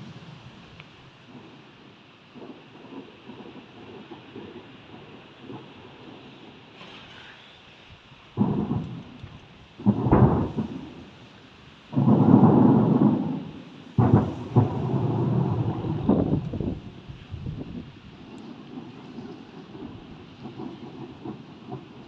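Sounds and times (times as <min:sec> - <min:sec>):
fireworks booming: 0:08.4 - 0:11.3, 0:11.9 - 0:22.0.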